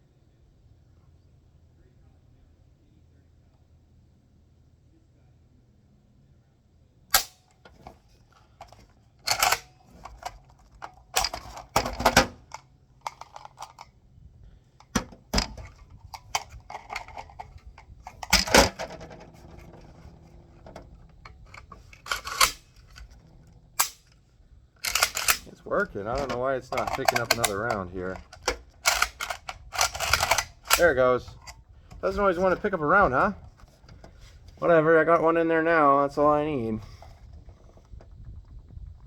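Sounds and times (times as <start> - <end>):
rifle action clacking: 8.6 - 13.9, 14.8 - 20.0, 21.2 - 23.2, 24.8 - 32.6.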